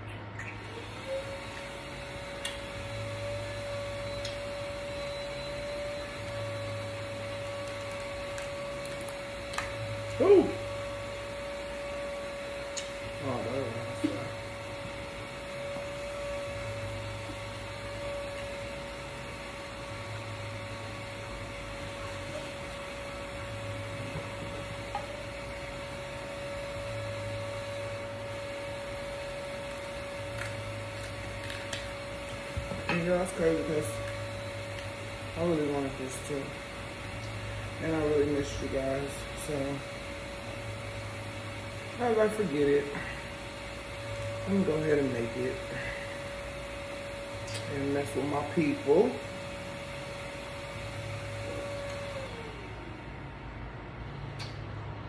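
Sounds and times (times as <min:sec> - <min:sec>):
high-pitched machine hum: 0:00.0 - 0:54.2
small click: 0:54.4 - 0:54.6.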